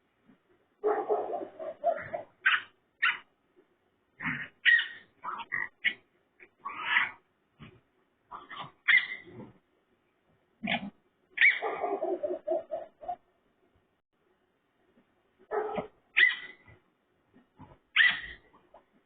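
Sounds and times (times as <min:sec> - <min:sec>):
raccoon making pig-like calls: 0:04.2 - 0:07.2.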